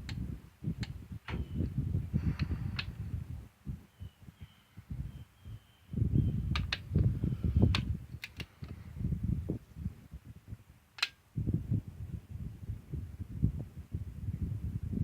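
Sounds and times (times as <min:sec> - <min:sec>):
torque wrench clicks: 0:11.0 - 0:11.2.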